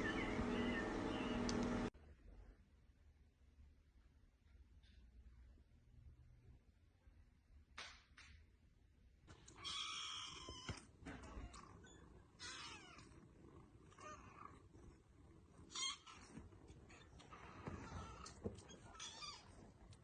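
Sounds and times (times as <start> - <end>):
cat meowing: 9.5 - 13.2, 15.6 - 19.6.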